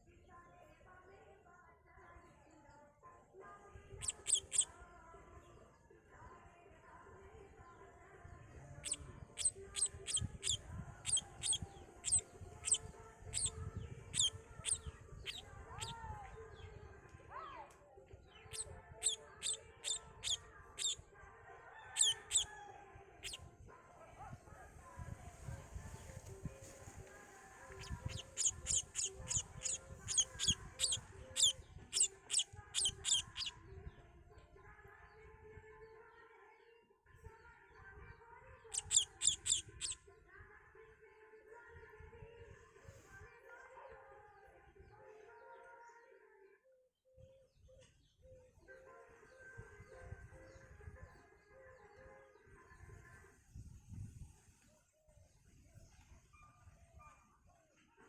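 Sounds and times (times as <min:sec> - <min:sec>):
lower slower bird call: 0:04.0 - 0:04.6, 0:08.8 - 0:13.5, 0:27.7 - 0:33.5
small birds chirping: 0:04.0 - 0:04.7, 0:08.8 - 0:16.1, 0:18.4 - 0:21.0, 0:22.0 - 0:22.5, 0:27.6 - 0:33.6, 0:38.7 - 0:40.0.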